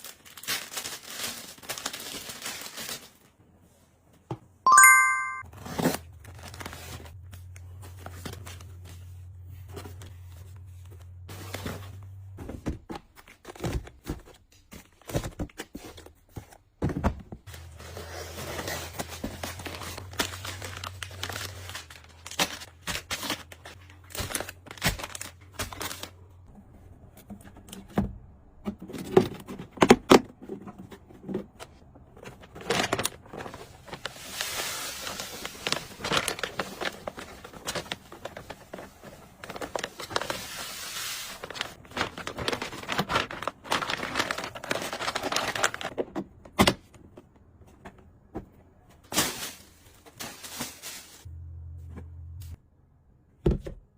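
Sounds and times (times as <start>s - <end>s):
packaging crinkling and tearing: 0.0s - 3.3s, 18.4s - 26.2s, 32.5s - 46.0s.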